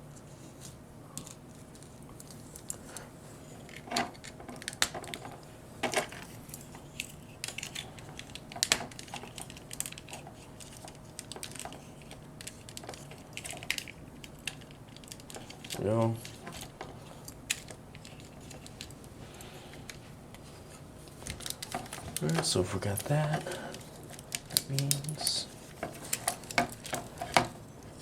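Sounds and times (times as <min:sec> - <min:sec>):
toy parts clicking and tapping: 0:21.3 - 0:27.5.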